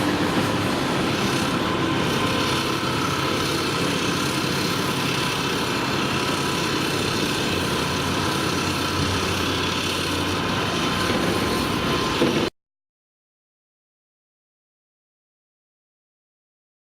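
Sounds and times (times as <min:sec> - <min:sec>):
excavator diesel engine running: 0:00.0 - 0:12.5.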